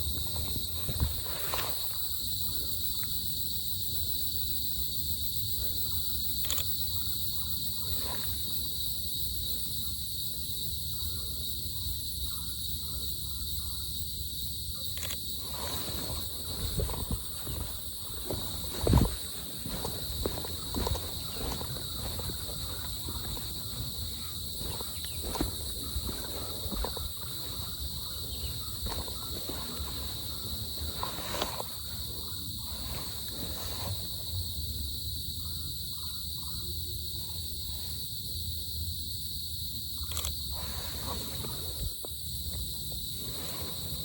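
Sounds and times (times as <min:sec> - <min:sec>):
rustles and footsteps: 0:00.0 - 0:02.5, 0:15.0 - 0:34.4
insects droning: 0:00.0 - 0:44.0.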